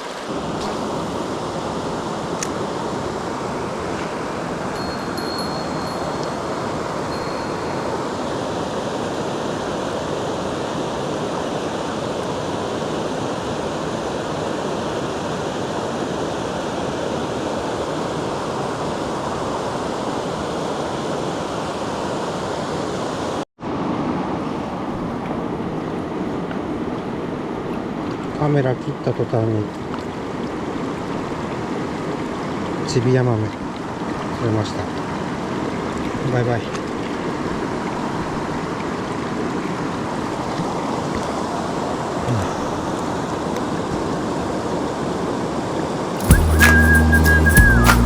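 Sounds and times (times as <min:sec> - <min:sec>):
stream water rushing: 0:00.0 - 0:48.0.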